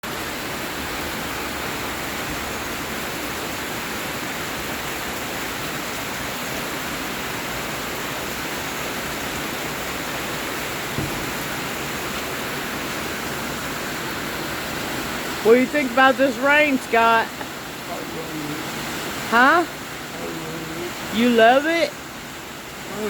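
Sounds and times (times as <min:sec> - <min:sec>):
heavy rain: 0:00.0 - 0:23.0.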